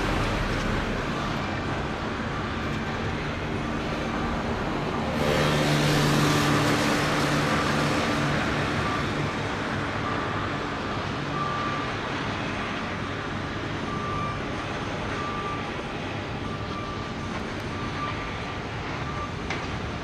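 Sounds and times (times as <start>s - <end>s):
traffic and machinery background: 0.0s - 20.0s
vehicle passing close by: 4.7s - 9.5s.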